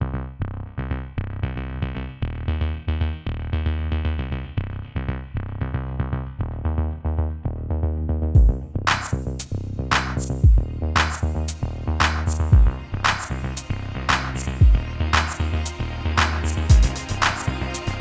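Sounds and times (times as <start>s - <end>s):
deep bass hit: 8.4s - 18.0s
electronic music: 8.4s - 18.0s.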